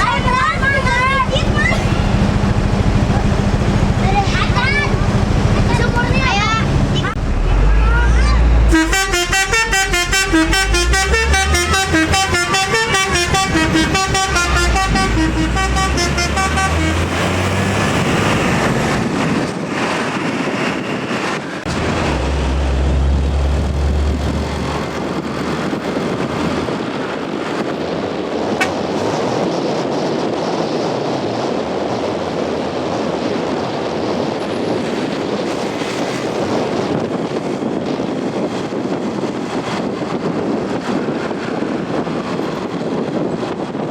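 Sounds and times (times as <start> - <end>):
low bus engine rumble: 0.0 - 43.9
road and traffic noise: 0.0 - 43.9
bus multi-tone horn melody: 6.6 - 18.6, 28.5 - 29.2.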